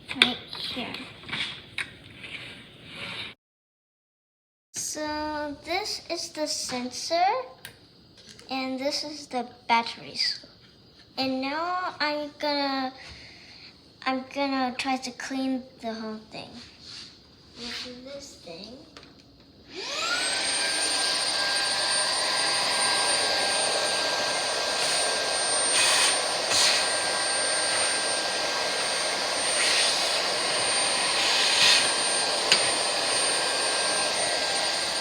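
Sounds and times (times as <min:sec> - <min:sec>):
electric cleaner motor whine: 0:19.6 - 0:35.0.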